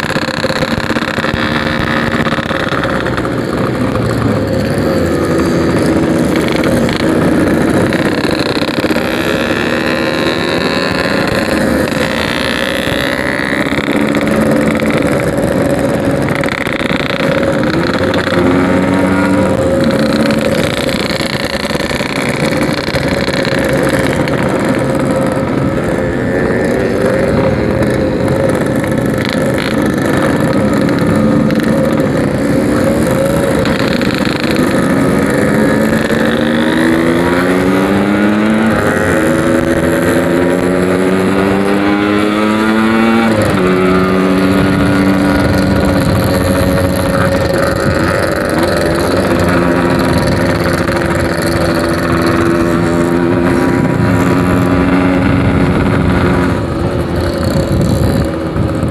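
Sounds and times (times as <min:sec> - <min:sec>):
two-stroke motorcycle engine revving: 0:00.0 - 0:58.9.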